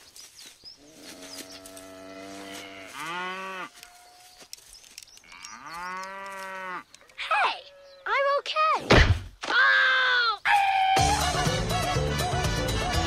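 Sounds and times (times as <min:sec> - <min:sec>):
cow mooing: 0:00.8 - 0:04.3, 0:05.3 - 0:06.9.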